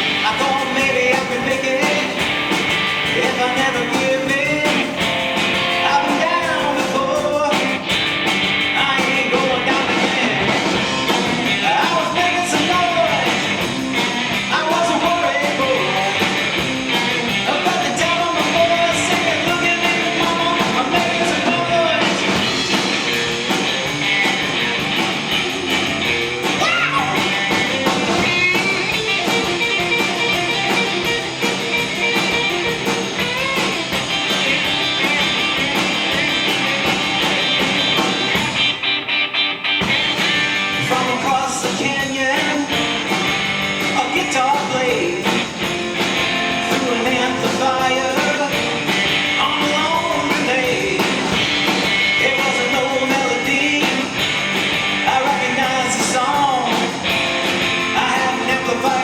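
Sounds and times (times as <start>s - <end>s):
person singing: 0.0s - 2.4s, 3.0s - 7.9s, 8.7s - 22.4s, 26.5s - 27.8s, 40.7s - 43.3s, 43.9s - 51.5s, 52.2s - 54.3s, 55.0s - 57.0s, 57.8s - 59.0s
rock band playing live: 0.0s - 59.0s.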